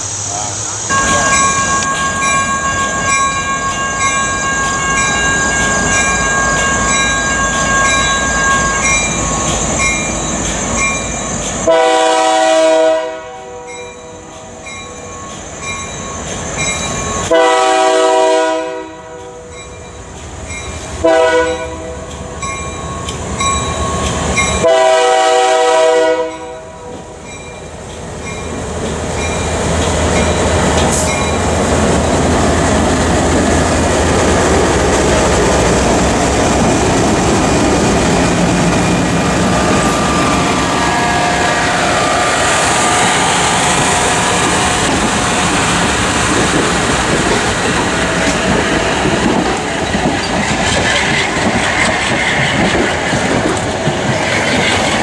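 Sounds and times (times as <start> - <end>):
train wheels clattering on rails: 0.0 - 11.8, 13.7 - 18.0, 19.1 - 24.9, 26.8 - 41.0, 42.0 - 55.0
locomotive air horn: 11.7 - 13.7, 17.3 - 19.5, 21.0 - 22.0, 24.6 - 26.9, 39.6 - 44.9.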